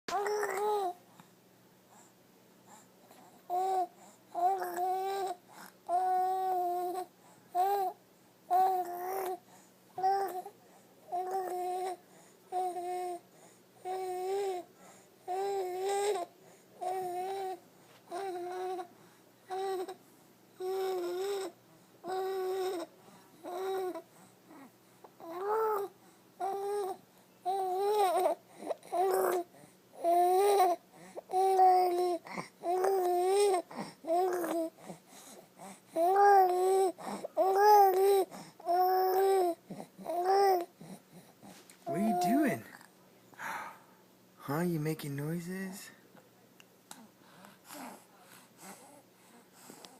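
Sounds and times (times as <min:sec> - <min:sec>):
baby cooing: 0:00.1 - 0:01.0, 0:03.5 - 0:09.4, 0:10.0 - 0:10.5, 0:11.1 - 0:13.2, 0:13.8 - 0:14.7, 0:15.3 - 0:18.9, 0:19.5 - 0:20.0, 0:20.6 - 0:34.8, 0:36.0 - 0:40.9, 0:41.8 - 0:42.9.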